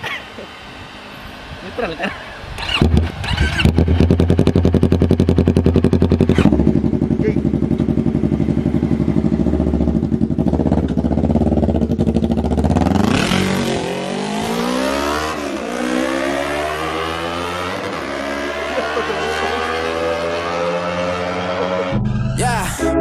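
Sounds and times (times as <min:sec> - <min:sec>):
motorcycle engine idling and revving: 0:01.2 - 0:22.0.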